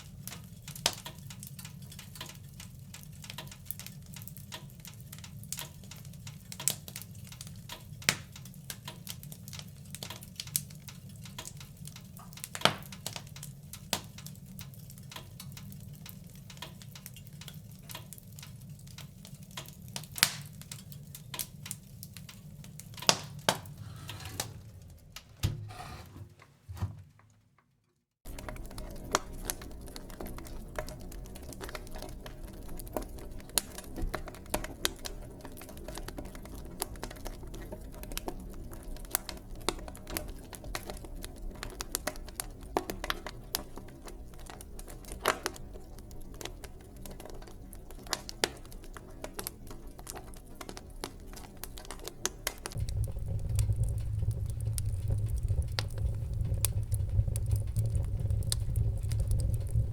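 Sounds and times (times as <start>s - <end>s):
fire crackling and popping: 0.0s - 23.8s, 28.2s - 59.9s
low rumble of flame: 28.2s - 59.9s.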